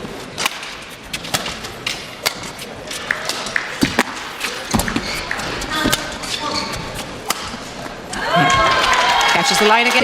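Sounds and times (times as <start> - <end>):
racket hitting shuttlecock: 0.4 - 6.4.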